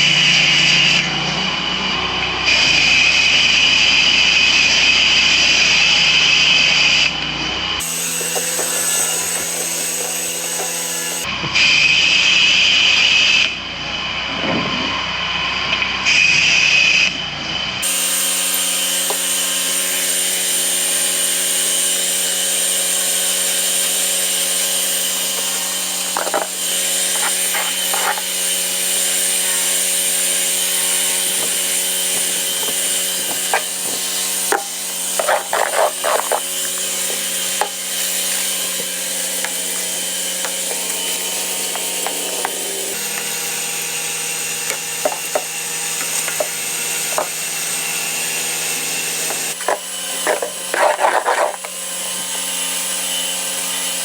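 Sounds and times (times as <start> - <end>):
pressure washer running: 7.8 - 11.3, 17.8 - 54.0.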